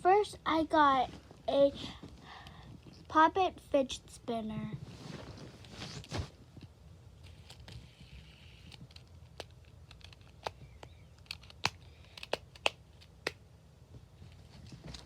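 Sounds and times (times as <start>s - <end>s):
handling rustle: 4.7s - 6.4s.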